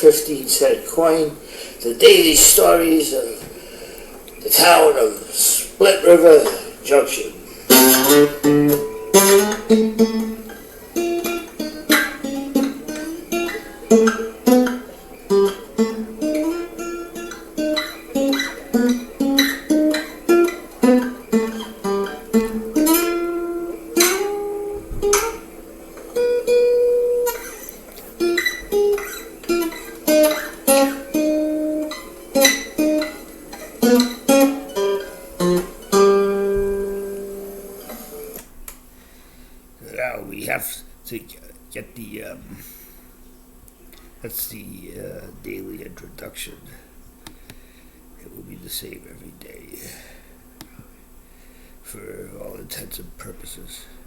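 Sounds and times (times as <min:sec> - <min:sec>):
strummed guitar chords: 0:00.0 - 0:03.6, 0:05.8 - 0:38.4
plucked guitar melody: 0:05.9 - 0:38.4.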